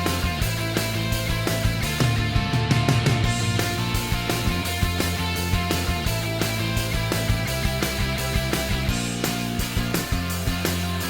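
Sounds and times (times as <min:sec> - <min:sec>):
rock music with guitar and drums: 0:00.0 - 0:11.0.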